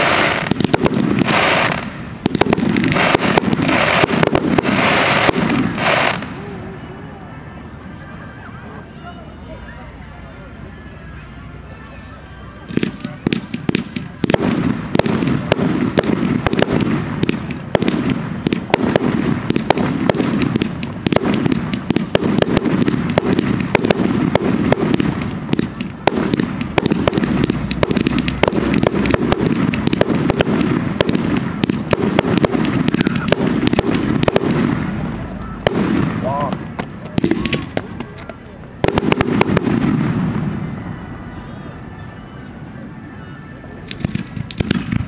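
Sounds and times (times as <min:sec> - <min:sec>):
fireworks cracking and crackling: 0:00.0 - 0:06.8, 0:12.6 - 0:41.0, 0:43.8 - 0:45.0.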